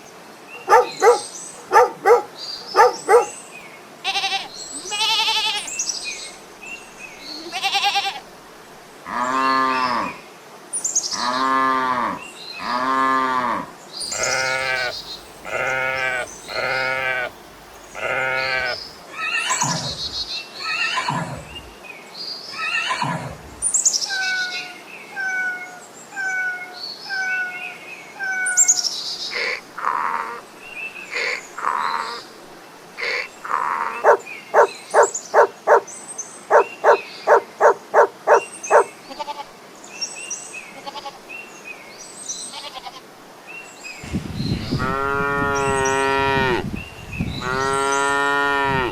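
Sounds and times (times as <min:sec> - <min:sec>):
farm animal calls: 0:00.6 - 0:03.4, 0:04.0 - 0:05.7, 0:07.3 - 0:08.3, 0:11.2 - 0:21.8, 0:22.6 - 0:23.7, 0:33.0 - 0:35.8, 0:36.5 - 0:39.5, 0:47.4 - 0:48.9.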